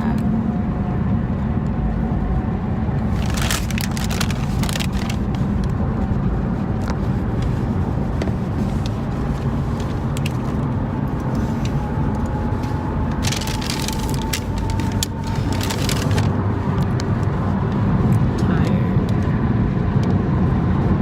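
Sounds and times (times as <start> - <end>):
vehicle rumbling: 0.0 - 21.0
clicks and crackles: 3.1 - 5.8, 9.8 - 17.3.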